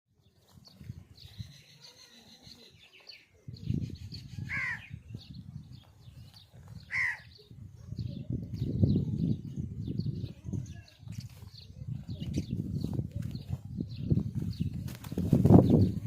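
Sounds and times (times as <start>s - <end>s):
small birds chirping: 0.2s - 16.0s
crow cawing: 4.5s - 4.9s, 6.9s - 7.3s.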